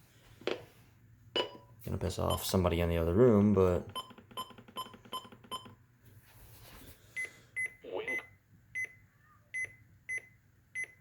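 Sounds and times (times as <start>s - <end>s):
electronic key beeps: 7.6s - 9.0s, 9.6s - 11.0s.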